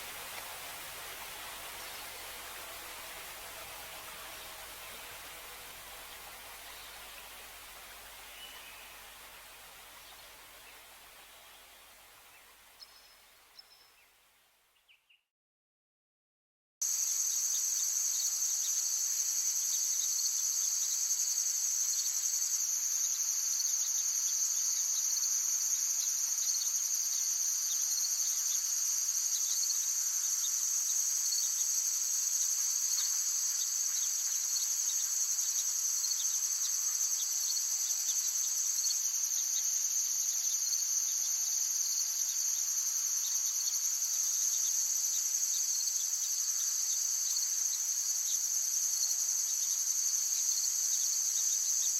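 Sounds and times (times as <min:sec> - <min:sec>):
insects trilling: 0:16.9 - 0:51.9.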